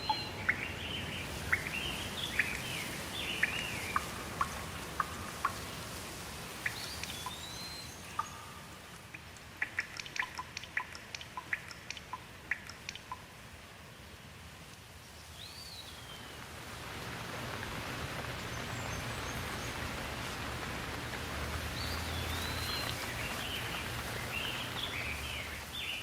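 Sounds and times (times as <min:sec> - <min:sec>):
bird whistled call: 0:00.0 - 0:04.0, 0:06.6 - 0:08.6
water drops dripping: 0:00.0 - 0:13.4, 0:18.5 - 0:25.7
steady rainfall: 0:00.0 - 0:26.0.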